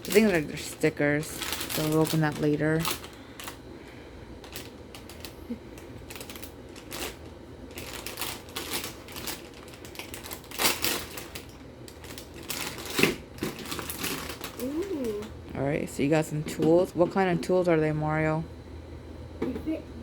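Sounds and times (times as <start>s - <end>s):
packaging rustling: 0.0s - 3.6s, 4.4s - 15.3s.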